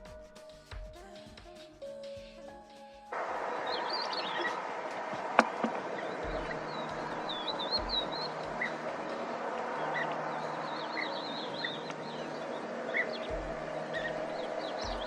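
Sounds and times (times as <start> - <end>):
small birds chirping: 3.1 - 15.0
low rumbles: 3.2 - 15.0.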